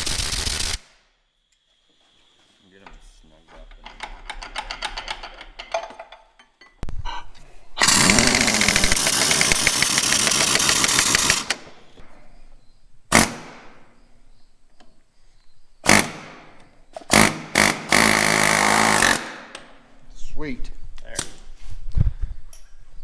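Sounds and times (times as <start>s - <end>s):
impact wrench hammering: 7.8s - 11.6s, 17.1s - 19.6s.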